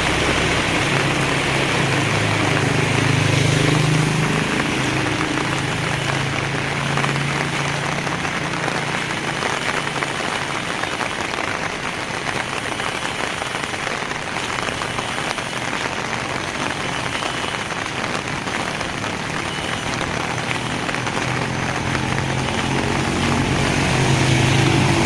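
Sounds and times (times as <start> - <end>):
heavy rain pouring: 0.0 - 25.0
low engine hum: 18.5 - 25.0.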